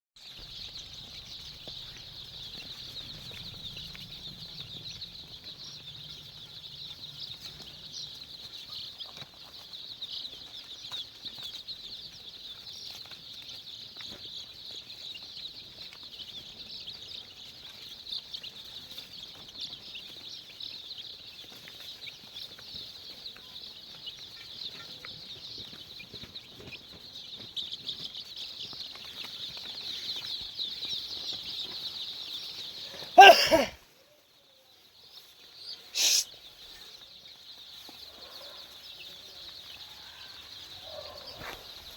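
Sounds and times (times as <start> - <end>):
chicks peeping: 0.2 - 41.9.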